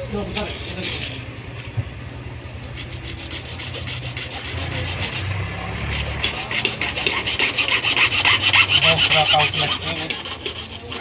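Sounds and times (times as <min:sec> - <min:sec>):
tool scraping through plastic: 0:05.9 - 0:11.0.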